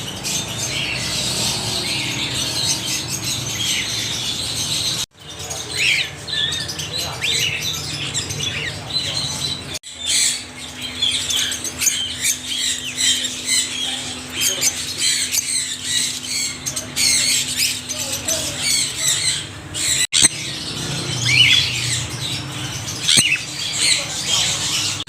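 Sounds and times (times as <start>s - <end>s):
parrots chirping and squawking: 0.0s - 25.0s.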